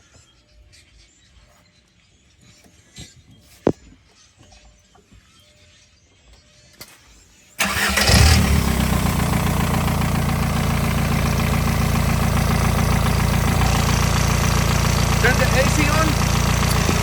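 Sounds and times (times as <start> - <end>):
diesel engine cranking and starting: 7.6 - 17.0
diesel engine idling: 7.6 - 17.0.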